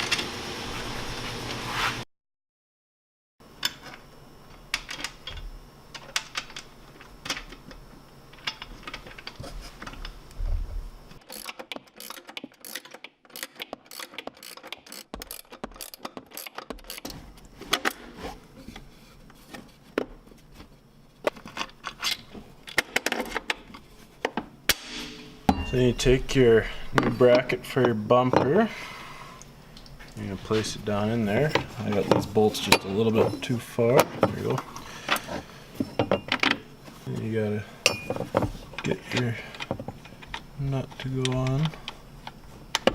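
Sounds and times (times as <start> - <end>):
metal tools clinking: 37.8 - 38.4.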